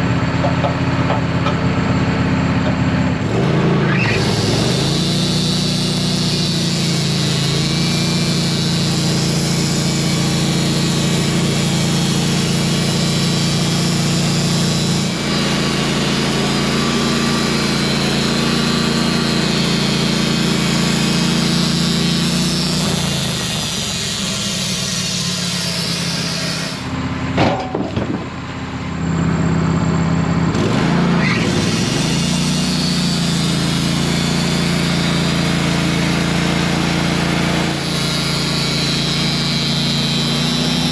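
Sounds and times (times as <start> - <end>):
band sawmill cutting log: 0.0 - 40.9.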